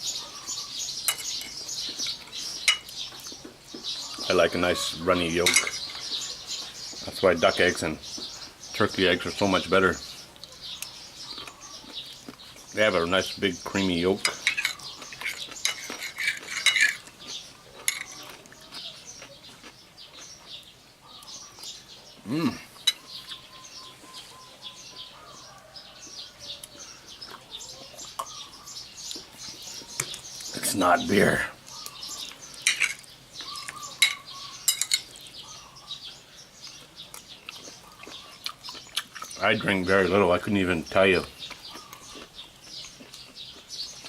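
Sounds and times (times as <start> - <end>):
birds chirping: 0.0 - 44.0
cutlery scraping dishware: 14.2 - 17.0.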